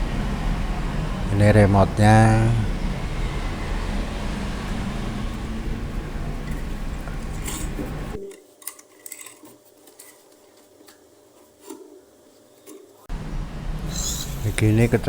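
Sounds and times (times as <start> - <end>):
steady background noise: 0.0 - 15.0
plastic things clicking and rubbing: 6.2 - 13.0.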